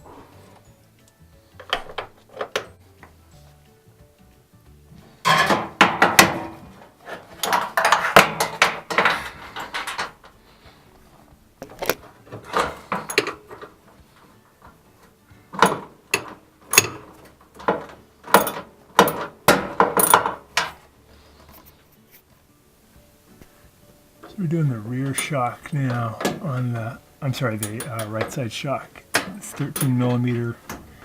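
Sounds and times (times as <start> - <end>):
wrench clanking on metal: 5.2 - 10.3, 11.7 - 13.8, 15.5 - 20.8, 24.2 - 31.0.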